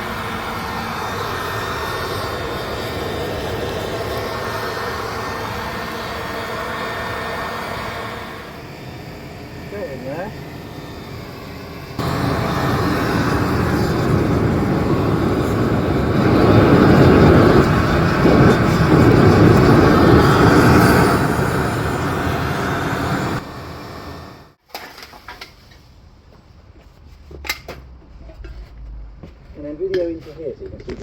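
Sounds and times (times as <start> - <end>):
electric blower running: 0.0 - 24.5.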